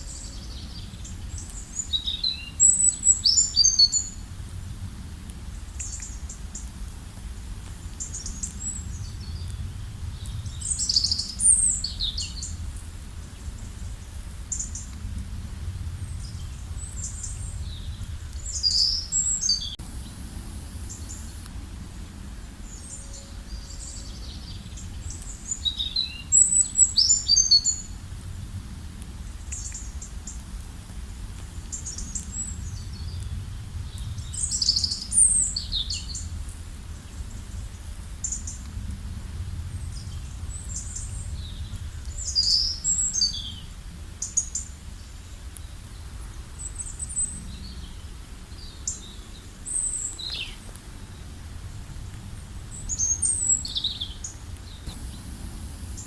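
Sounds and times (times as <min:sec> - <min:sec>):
songbird song: 0:00.0 - 0:56.0
low rumble: 0:06.7 - 0:25.2, 0:54.8 - 0:56.0.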